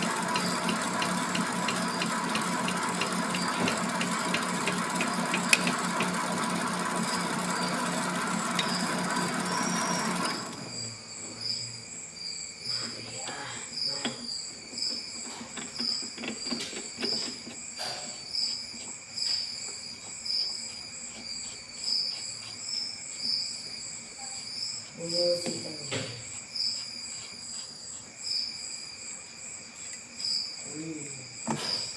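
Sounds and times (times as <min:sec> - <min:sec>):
lathe humming and cutting: 0:00.0 - 0:10.8
cricket chirping: 0:00.1 - 0:31.9.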